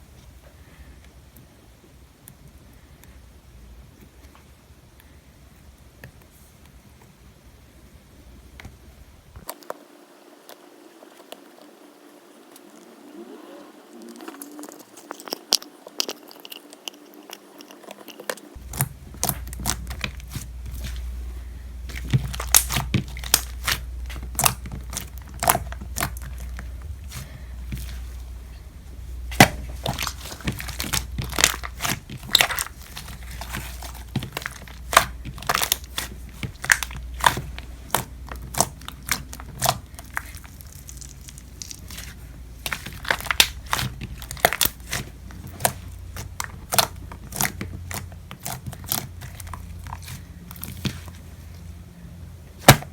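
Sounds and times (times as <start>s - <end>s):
slime crackling pops: 21.9s - 27.2s, 29.3s - 51.0s.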